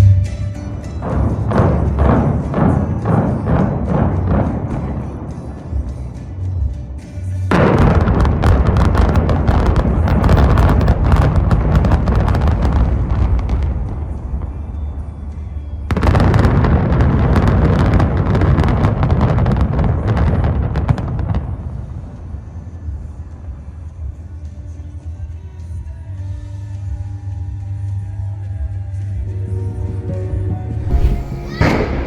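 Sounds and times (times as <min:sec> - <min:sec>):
music: 0:00.0 - 0:32.0
demolition charges exploding: 0:00.8 - 0:05.4, 0:07.5 - 0:14.5, 0:30.8 - 0:32.0
building collapse rumble: 0:30.8 - 0:32.0.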